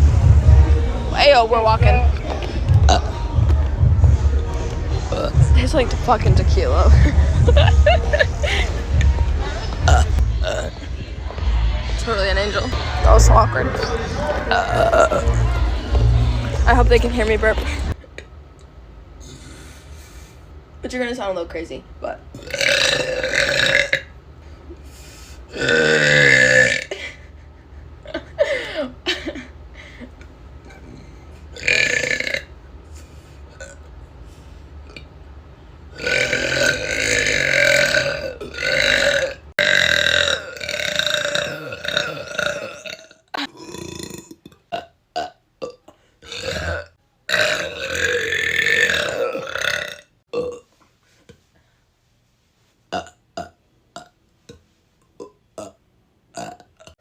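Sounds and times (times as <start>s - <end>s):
people belching: 1.9s - 3.4s, 4.8s - 6.2s, 6.8s - 10.9s, 12.4s - 18.0s, 22.4s - 24.1s, 25.5s - 27.0s, 31.6s - 32.5s, 36.0s - 50.6s, 56.4s - 57.0s.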